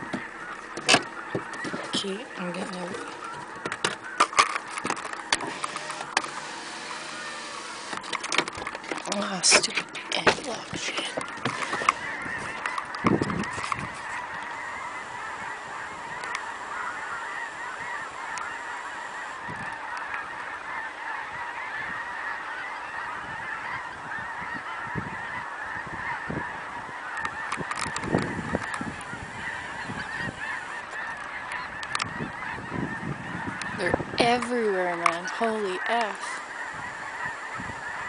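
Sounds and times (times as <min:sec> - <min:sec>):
flock of birds calling: 0:00.0 - 0:38.0.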